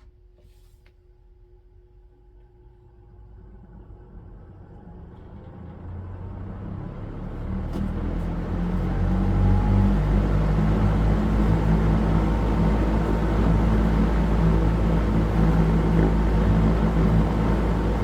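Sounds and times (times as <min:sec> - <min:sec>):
exhaust fan motor hum: 0:00.0 - 0:18.0.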